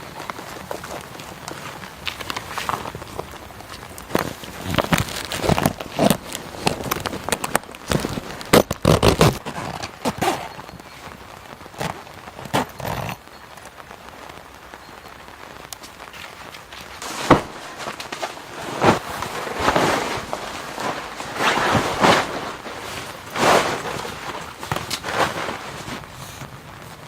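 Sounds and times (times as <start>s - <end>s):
faint steady hiss: 0.0s - 27.0s
knocks clicks and rustles of handling: 0.2s - 10.8s, 15.7s - 27.0s.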